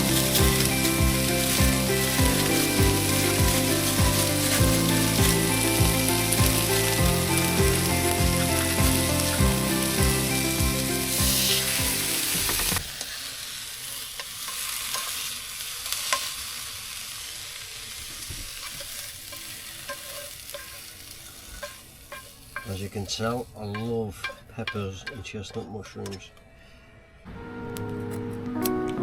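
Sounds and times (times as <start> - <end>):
background music with a beat: 0.0 - 12.8
vegetables sizzling in a pan: 0.0 - 24.4.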